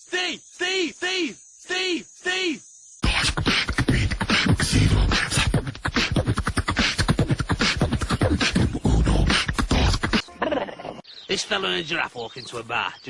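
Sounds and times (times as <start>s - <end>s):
beatbox vocal percussion: 3.0s - 10.3s.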